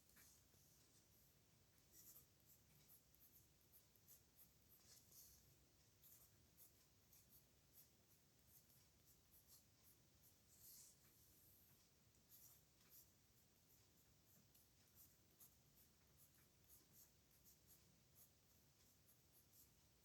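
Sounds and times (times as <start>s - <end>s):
pen scratching on paper: 1.9s - 7.9s.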